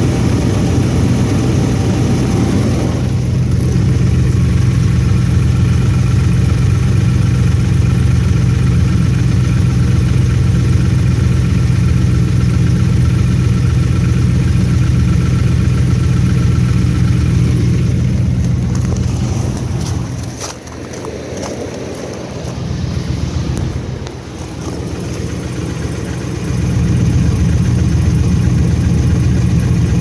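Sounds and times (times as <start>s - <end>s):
car engine idling: 0.0s - 30.0s
light engine knock: 3.2s - 21.2s, 24.4s - 30.0s.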